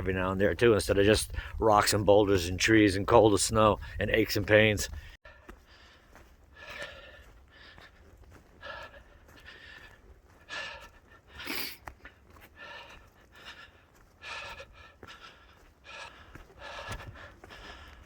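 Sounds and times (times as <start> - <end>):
man breathing hard: 5.0 - 18.0.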